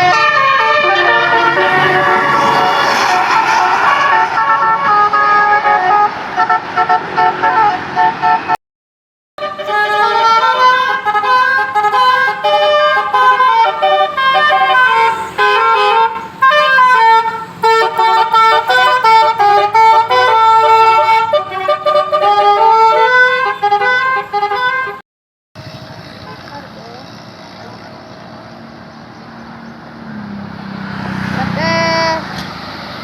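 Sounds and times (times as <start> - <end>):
bus horn playing a melody: 0.0 - 8.6, 9.4 - 25.0.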